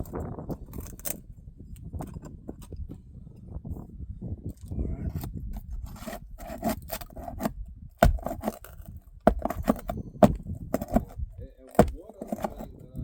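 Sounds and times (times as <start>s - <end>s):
scraping and rasping shingles: 0.0s - 2.8s, 5.2s - 13.0s
sharp knocks: 8.0s - 12.6s.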